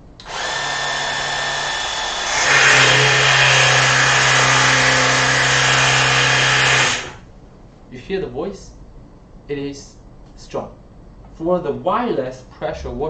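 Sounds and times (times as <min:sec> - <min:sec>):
pressure washer motor hum: 0:00.2 - 0:07.2.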